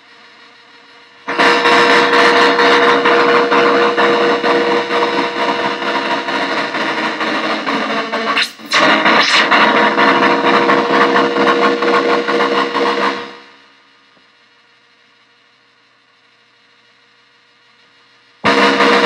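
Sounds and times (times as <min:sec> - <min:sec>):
harsh buzzing synth noise: 0:08.3 - 0:09.8.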